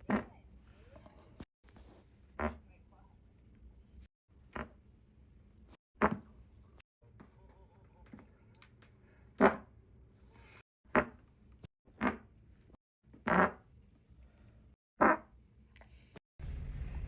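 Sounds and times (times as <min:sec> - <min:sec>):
human farts: 0:02.4 - 0:02.6, 0:09.4 - 0:09.7, 0:10.9 - 0:11.2, 0:11.9 - 0:12.3, 0:13.2 - 0:13.7, 0:15.0 - 0:15.3.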